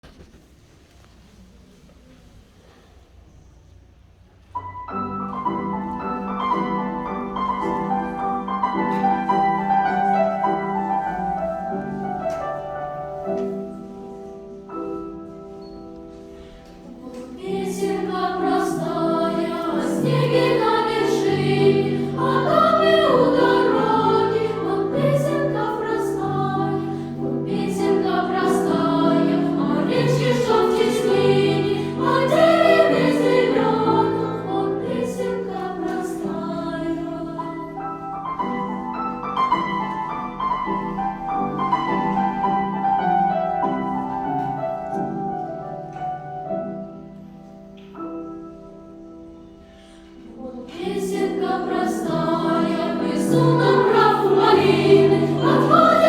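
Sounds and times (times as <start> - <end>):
choir singing: 16.3 - 44.3, 49.8 - 56.0.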